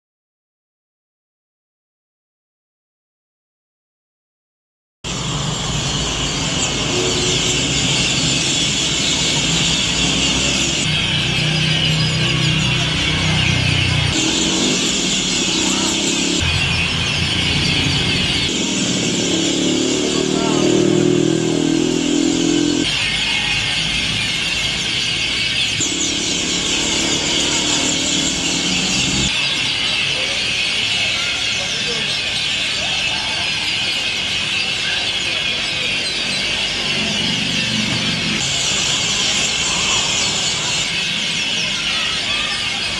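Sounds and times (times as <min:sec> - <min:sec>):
engine droning: 0:05.1 - 0:29.4, 0:34.9 - 0:41.6
flock of birds chattering: 0:05.1 - 0:42.9
low city traffic rumble: 0:05.1 - 0:42.9.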